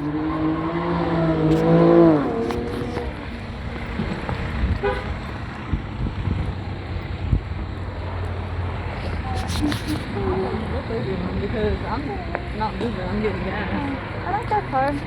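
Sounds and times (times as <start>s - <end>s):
traffic rumble: 0.0s - 15.0s
car horn honking: 4.6s - 5.3s.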